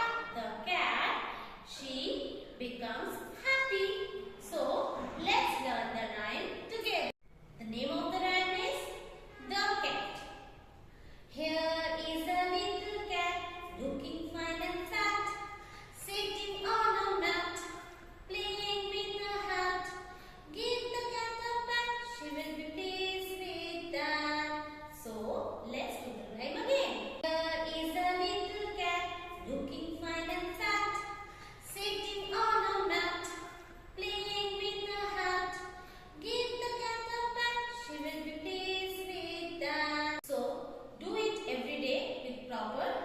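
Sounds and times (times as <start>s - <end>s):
singer breath: 10.8s - 11.4s, 15.5s - 16.0s, 20.1s - 20.5s, 31.2s - 31.7s, 35.7s - 36.2s.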